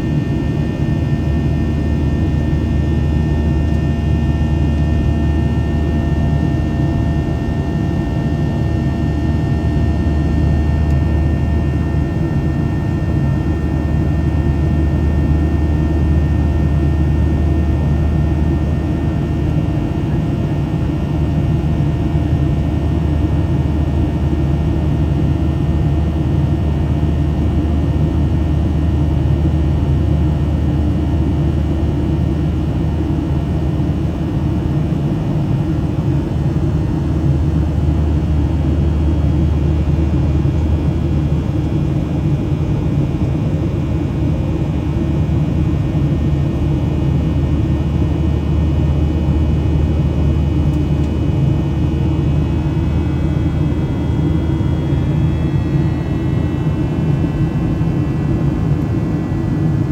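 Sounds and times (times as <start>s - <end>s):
jet engine cabin rumble: 0.0s - 59.9s.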